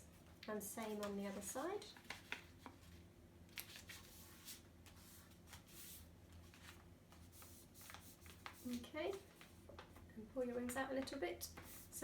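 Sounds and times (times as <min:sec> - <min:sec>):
paper being folded and creased: 0:00.8 - 0:10.0.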